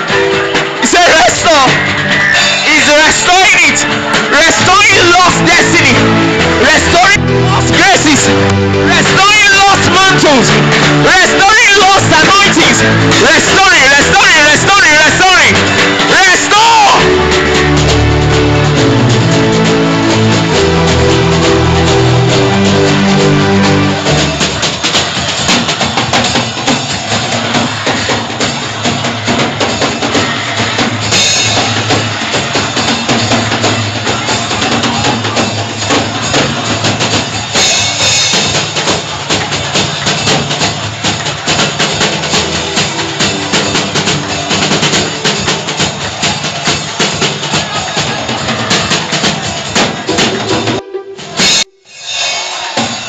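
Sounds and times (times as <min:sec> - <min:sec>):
drum kit: 0:00.0 - 0:53.0
sustained bass notes: 0:01.3 - 0:24.6.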